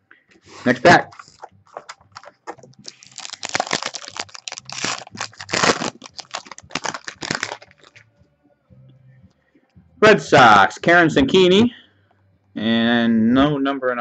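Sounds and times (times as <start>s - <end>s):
card pack wrapper tearing: 1.1s - 8.0s.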